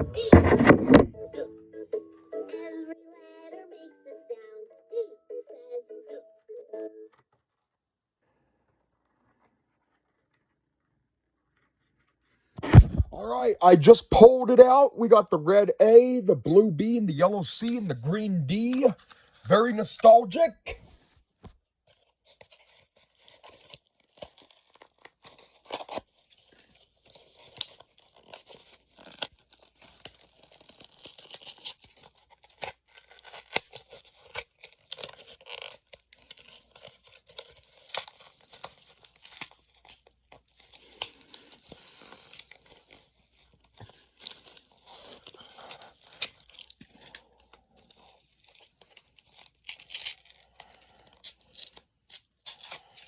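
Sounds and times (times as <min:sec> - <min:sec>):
packaging tearing and crinkling: 0:21.9 - 0:53.0.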